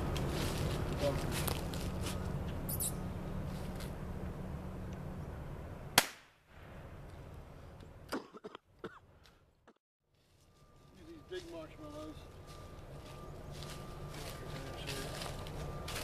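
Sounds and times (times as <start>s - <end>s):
gunshot: 6.0s - 6.8s.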